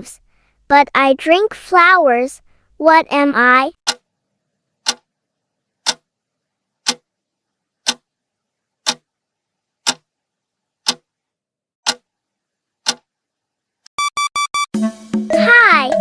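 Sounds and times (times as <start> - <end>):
clock ticking: 4.8 - 5.0, 5.8 - 6.0, 6.8 - 7.0, 7.8 - 8.0, 8.8 - 9.0, 9.8 - 10.0, 10.8 - 11.0, 11.8 - 12.0, 12.8 - 13.0.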